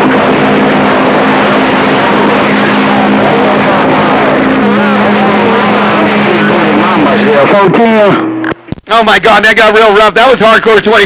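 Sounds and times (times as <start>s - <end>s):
radio static hiss: 0.0s - 11.0s
garbled voice over radio: 2.3s - 11.0s.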